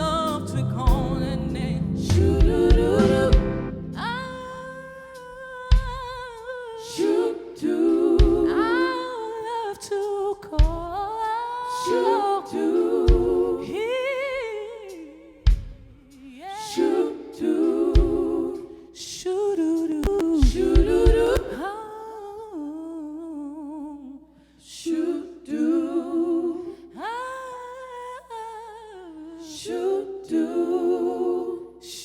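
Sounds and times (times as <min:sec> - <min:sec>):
vocal group singing in harmony: 0:00.0 - 0:32.0
low thump: 0:02.1 - 0:04.0.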